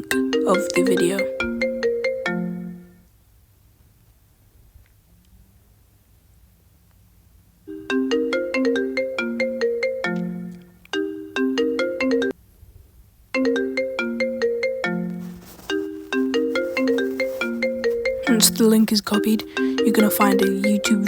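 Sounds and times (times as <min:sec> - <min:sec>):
phone ringtone melody: 0:00.0 - 0:03.0, 0:07.7 - 0:12.4, 0:13.4 - 0:21.0.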